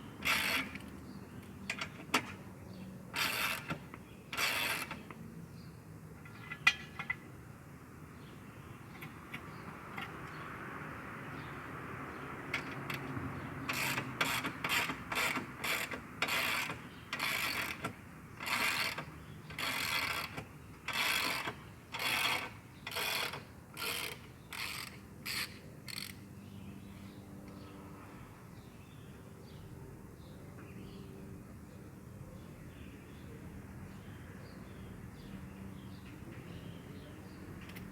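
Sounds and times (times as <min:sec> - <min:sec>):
ratchet rattling: 0:13.7 - 0:26.2.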